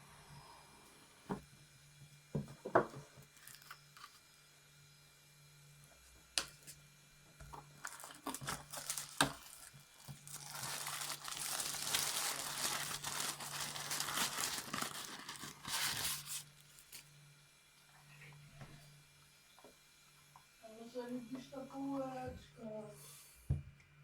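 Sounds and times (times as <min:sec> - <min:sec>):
wrapping crinkling and tearing: 0:03.3 - 0:04.2, 0:07.6 - 0:17.2.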